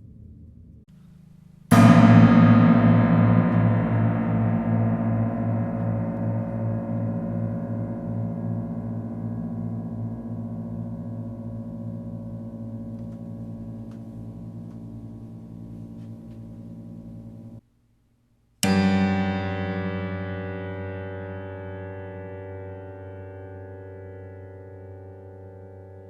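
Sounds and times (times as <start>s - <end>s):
piano strings ringing: 1.1s - 17.6s, 18.6s - 26.0s
loud piano string strike: 1.6s - 17.6s, 18.6s - 23.6s.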